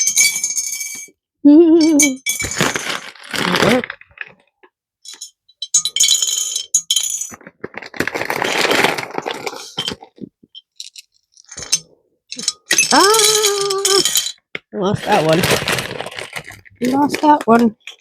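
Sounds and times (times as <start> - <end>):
charms clinking in a jar: 0.0 - 1.2, 1.8 - 4.0, 5.1 - 14.5.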